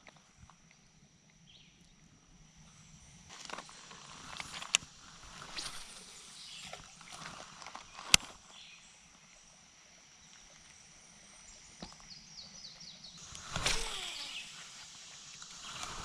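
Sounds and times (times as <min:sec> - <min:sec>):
bird singing: 0:11.5 - 0:14.8.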